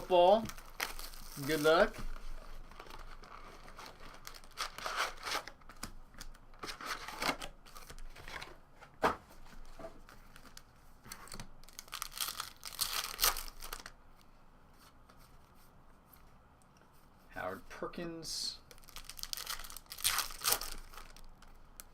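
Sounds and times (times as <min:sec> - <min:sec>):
packaging torn and crinkled: 0:00.0 - 0:01.9, 0:02.7 - 0:05.6, 0:11.3 - 0:14.0, 0:18.7 - 0:21.9.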